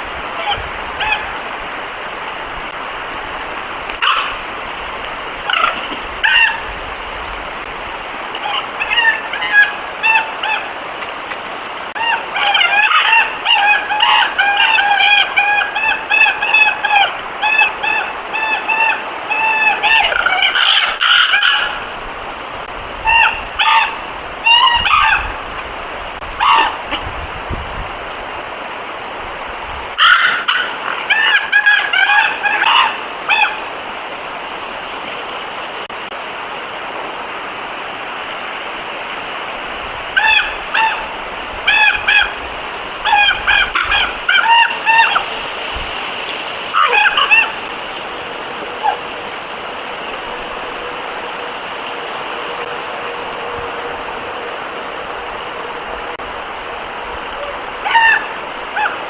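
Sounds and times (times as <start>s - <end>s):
steady hiss: 0.0s - 59.0s
geese honking: 4.0s - 4.4s, 5.4s - 6.7s, 8.3s - 10.8s, 12.0s - 22.0s, 23.0s - 25.6s, 26.4s - 27.0s, 30.0s - 33.7s, 40.1s - 45.5s, 46.3s - 59.0s.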